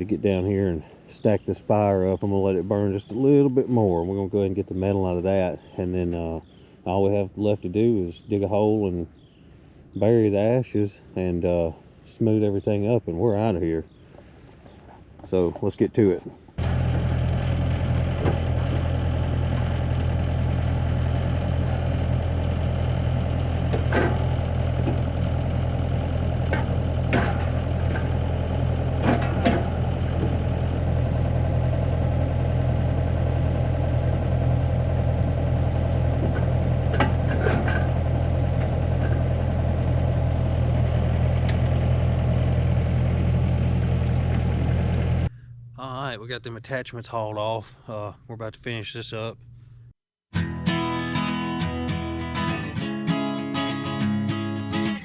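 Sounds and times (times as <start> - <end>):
large engine running: 16.6 - 45.3, 50.4 - 55.0.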